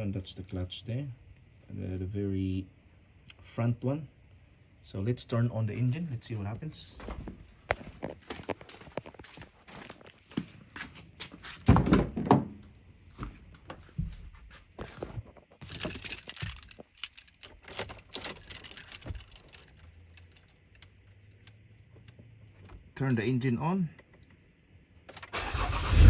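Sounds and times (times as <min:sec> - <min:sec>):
car keys jangling: 0:15.6 - 0:21.8.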